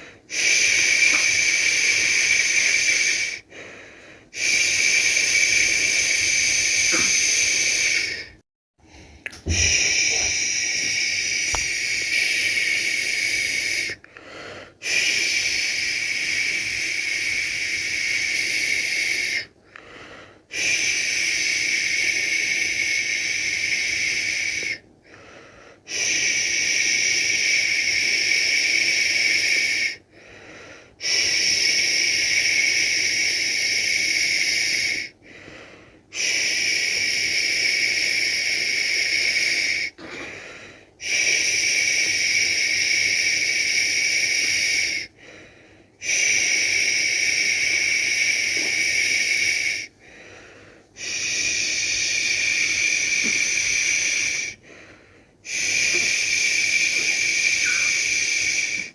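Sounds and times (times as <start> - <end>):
person shushing: 6.3 - 8.3, 9.3 - 14.0, 55.5 - 58.8.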